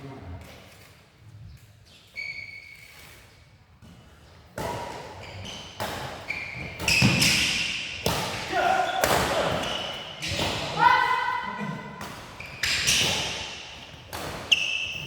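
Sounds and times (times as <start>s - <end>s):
shoes squeaking on court floor: 0.6s - 8.1s, 8.8s - 10.6s, 12.0s - 15.0s
racket hitting shuttlecock: 4.6s - 10.8s, 12.0s - 15.0s.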